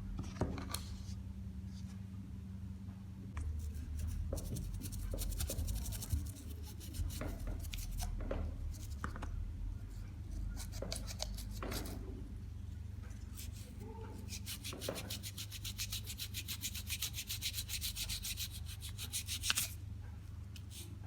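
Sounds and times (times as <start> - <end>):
steady low hum: 0.0 - 16.0
scratchy rubbing and scraping: 3.6 - 9.0, 13.3 - 19.8.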